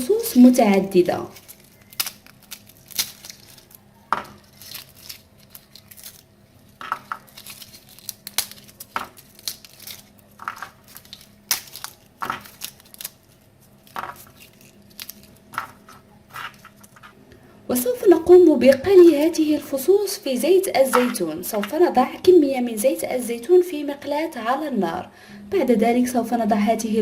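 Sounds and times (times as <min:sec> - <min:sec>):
garlic skins crinkling and tearing: 0:00.0 - 0:17.2, 0:18.0 - 0:22.3
garlic cloves snapping apart: 0:01.3 - 0:06.2, 0:06.8 - 0:17.0.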